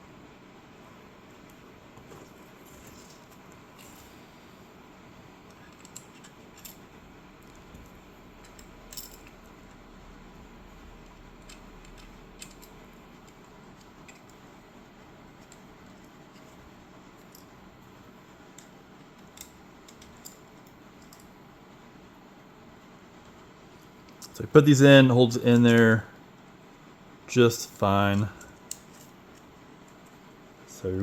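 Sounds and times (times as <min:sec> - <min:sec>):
steady low hiss: 0:00.0 - 0:31.0
metal washers and nuts clinking: 0:02.2 - 0:04.2, 0:05.5 - 0:09.7, 0:11.0 - 0:14.4, 0:18.5 - 0:21.4.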